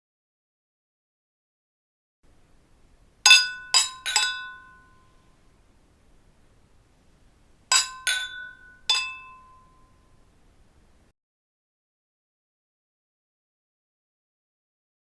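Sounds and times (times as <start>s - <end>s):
wine glasses clinking: 3.3s - 5.4s, 7.7s - 10.8s.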